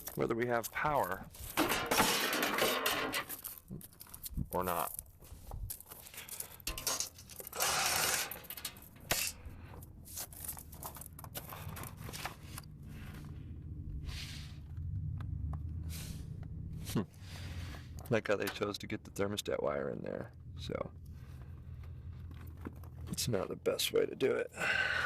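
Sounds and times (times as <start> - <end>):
metal tools clinking and scraping: 1.4 - 5.0, 5.7 - 12.7
loud rasping noise: 7.5 - 8.4.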